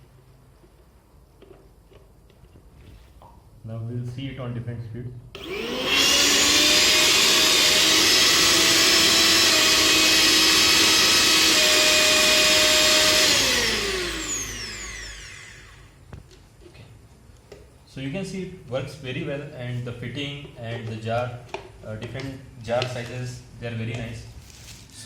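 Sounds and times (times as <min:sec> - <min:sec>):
mixer grinder motor whining: 0:05.4 - 0:16.1.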